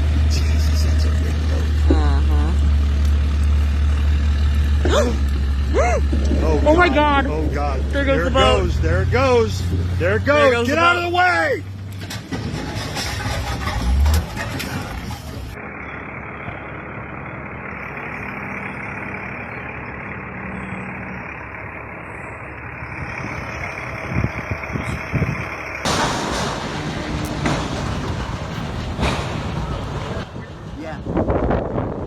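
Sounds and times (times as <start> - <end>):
vehicle engine running: 0.0 - 10.9, 13.2 - 32.0
outdoor noise: 0.0 - 32.0
loud low thump: 25.9 - 31.7.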